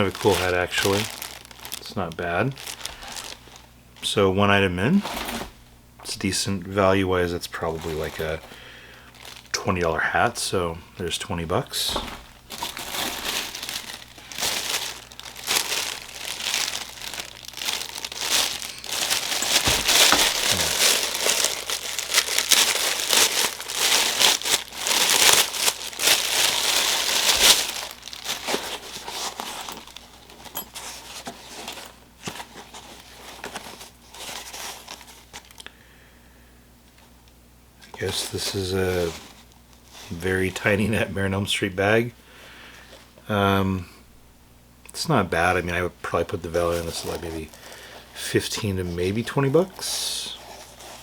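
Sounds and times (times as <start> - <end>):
packaging crinkling: 0.0 - 4.1, 6.8 - 35.7, 45.4 - 51.0.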